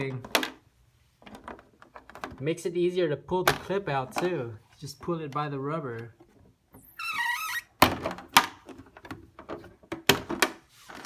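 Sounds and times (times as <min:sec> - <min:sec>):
plastic squeak: 0:06.8 - 0:07.9.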